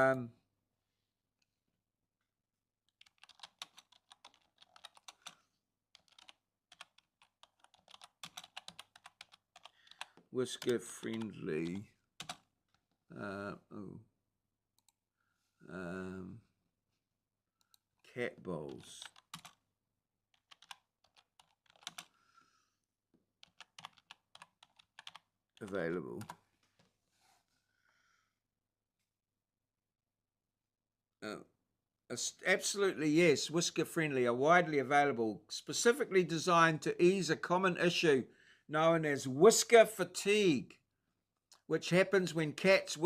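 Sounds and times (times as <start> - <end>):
typing on computer keyboard: 2.9 - 12.5, 18.7 - 19.6, 20.3 - 22.1, 23.4 - 26.4.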